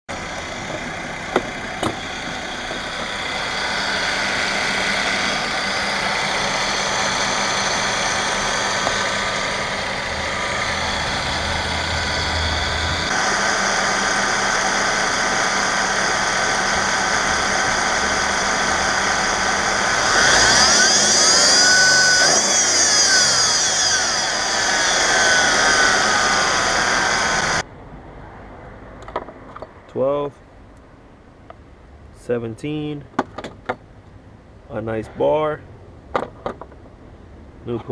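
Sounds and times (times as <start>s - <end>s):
car engine running: 0.1s - 27.6s
high-pitched belt whine: 0.1s - 27.7s.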